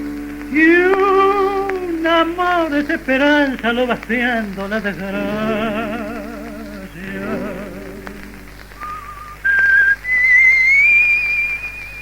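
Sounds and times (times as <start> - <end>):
sung note with vibrato: 0.0 - 1.8
record surface clicks and hum: 0.0 - 12.0
person whistling a melody: 8.8 - 12.0.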